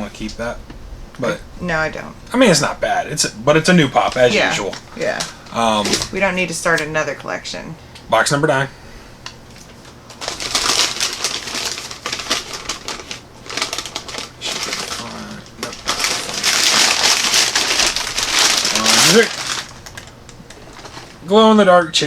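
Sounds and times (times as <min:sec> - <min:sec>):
cardboard box being torn open: 0:10.4 - 0:19.8.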